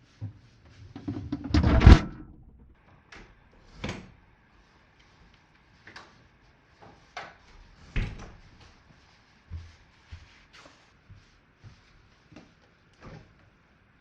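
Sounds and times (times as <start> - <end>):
knocks and clunks: 1.0 - 2.7.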